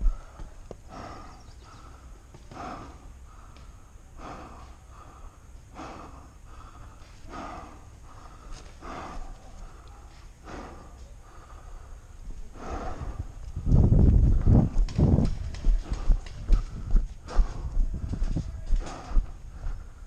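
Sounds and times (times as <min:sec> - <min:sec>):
person breathing hard: 0:00.0 - 0:20.0.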